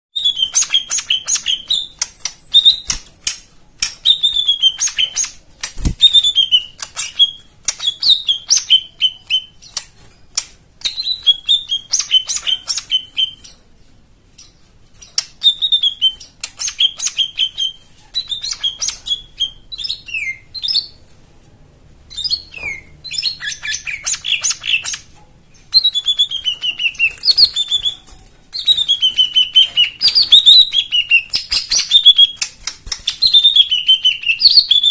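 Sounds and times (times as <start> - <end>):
bird singing: 0.2 - 5.4, 6.0 - 9.9, 10.8 - 13.6, 14.4 - 21.0, 22.1 - 34.9.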